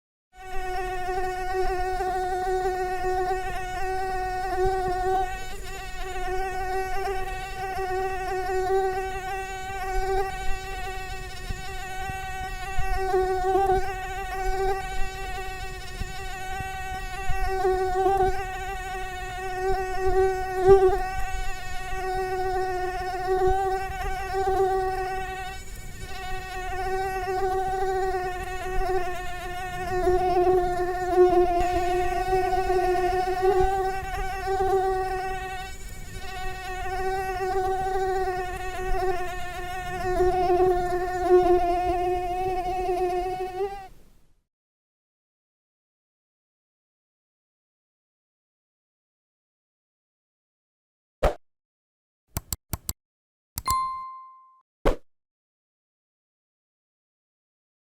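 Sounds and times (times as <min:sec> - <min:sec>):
mosquito whine: 0:00.4 - 0:43.9.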